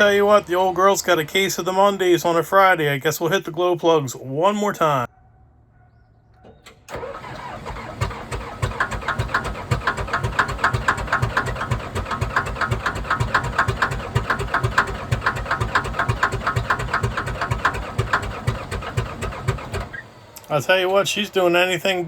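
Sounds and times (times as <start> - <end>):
diesel engine cranking by starter: 6.6 - 22.0.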